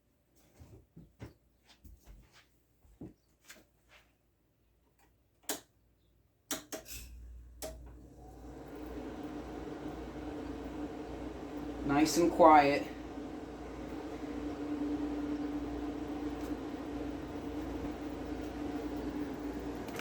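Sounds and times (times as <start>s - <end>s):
small sharp clicks and knocks: 4.9s - 5.8s, 6.5s - 8.0s
air conditioner humming: 6.8s - 20.0s.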